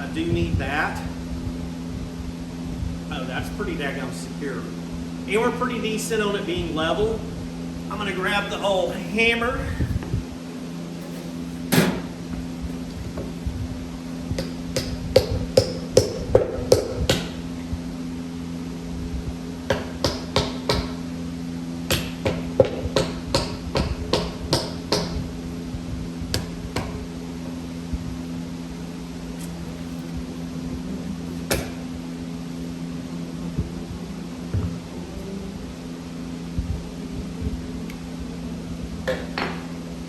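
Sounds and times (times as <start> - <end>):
hand hammer striking: 14.1 - 17.3, 19.7 - 20.9, 31.4 - 31.8.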